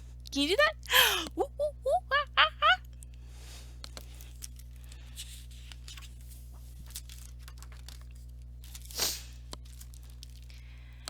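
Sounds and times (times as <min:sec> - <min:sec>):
steady low hum: 0:00.0 - 0:11.0
paper page turning: 0:03.9 - 0:10.5.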